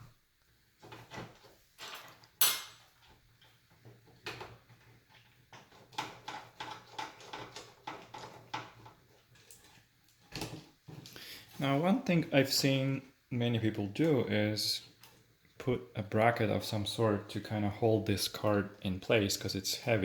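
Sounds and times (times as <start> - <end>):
plastic parts clicking and clattering: 0.8 - 11.2.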